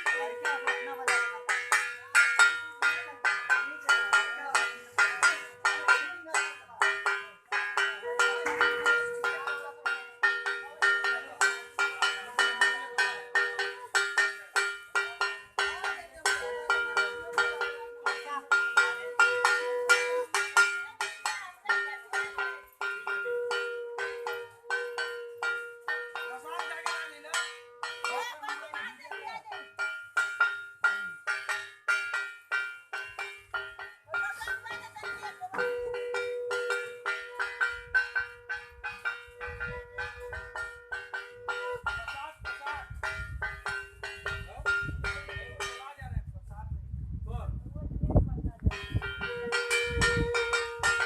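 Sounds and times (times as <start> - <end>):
hand bells ringing rapidly: 0.0 - 45.9, 48.7 - 51.0
conch shell blown: 8.0 - 9.6, 18.7 - 20.4, 23.0 - 26.2, 35.6 - 41.9, 49.2 - 51.0.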